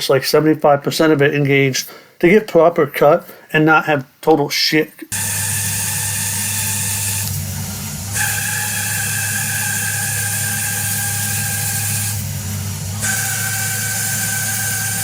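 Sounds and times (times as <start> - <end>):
high cutting whine: 5.1 - 15.0
lathe machine hum: 5.1 - 15.0.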